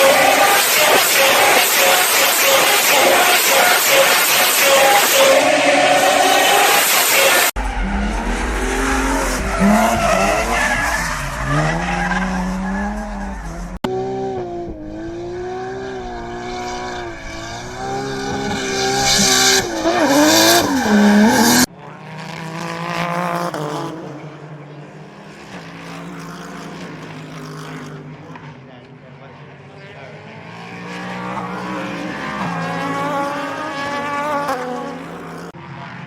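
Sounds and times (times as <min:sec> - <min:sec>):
tyres squealing: 0:00.0 - 0:08.0, 0:09.0 - 0:13.8
race car engines revving: 0:00.0 - 0:36.0.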